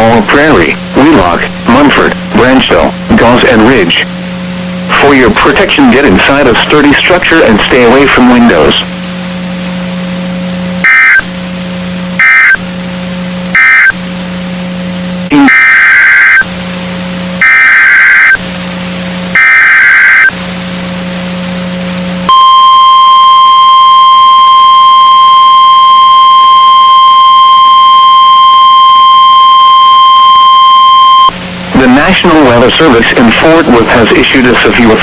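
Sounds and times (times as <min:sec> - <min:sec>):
low receiver hum: 0:00.0 - 0:35.0
steady warning alarm tone: 0:10.8 - 0:11.3, 0:12.2 - 0:12.7, 0:13.5 - 0:14.0, 0:15.3 - 0:16.5, 0:17.4 - 0:18.4, 0:19.3 - 0:20.4, 0:22.3 - 0:31.4.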